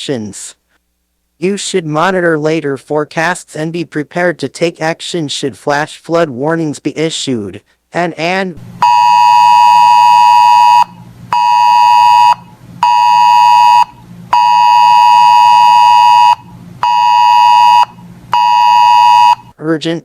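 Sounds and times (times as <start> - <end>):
buzzy electronic alert beeps: 8.8 - 19.5.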